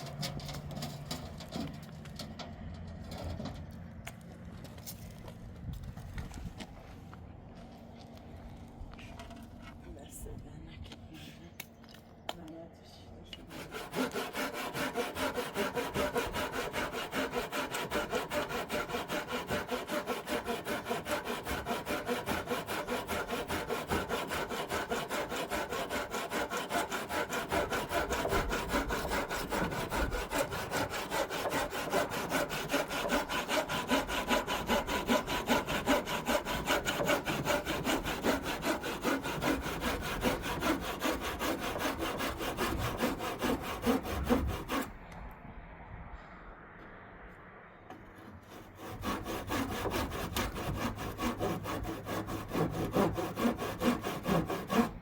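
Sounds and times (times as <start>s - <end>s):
saw cutting wood: 13.4s - 45.0s, 47.9s - 55.0s.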